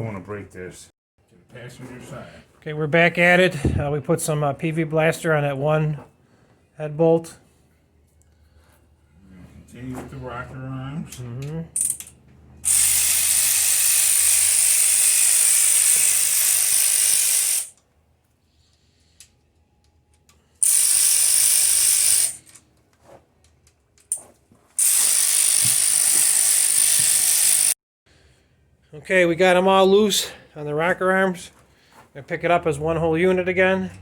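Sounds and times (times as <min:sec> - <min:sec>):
cordless impact wrench running: 0:12.6 - 0:17.8, 0:20.6 - 0:22.6, 0:24.8 - 0:27.8.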